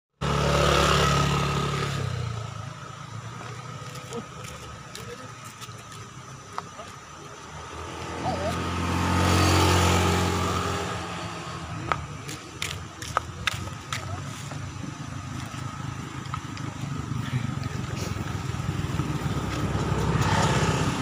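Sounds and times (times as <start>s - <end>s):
vehicle passing: 6.3s - 21.0s.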